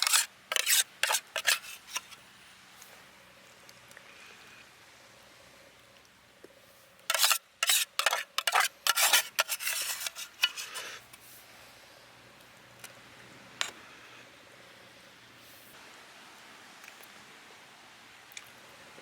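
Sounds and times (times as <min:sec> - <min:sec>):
spoon scraping cooking pot: 0:00.0 - 0:02.2, 0:07.1 - 0:11.0.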